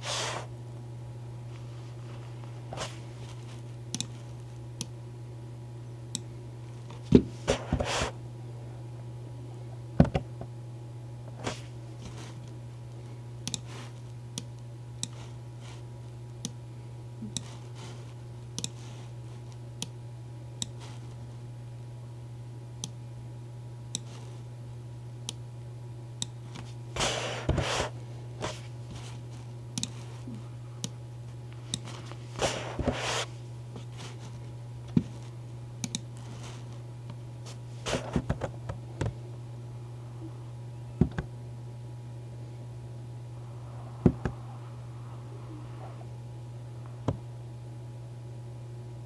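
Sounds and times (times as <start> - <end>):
low hum: 28.0 - 49.0.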